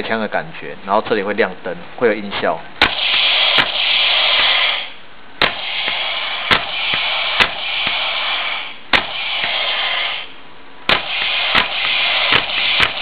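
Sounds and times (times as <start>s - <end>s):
toy gun electronic gunfire: 2.8s - 10.3s, 10.9s - 13.0s.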